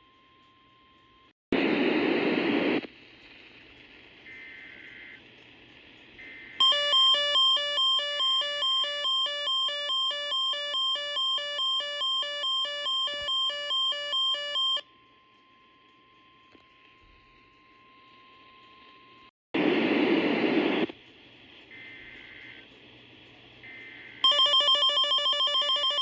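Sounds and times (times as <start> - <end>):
faint radio static: 1.6 - 6.6, 19.6 - 24.3.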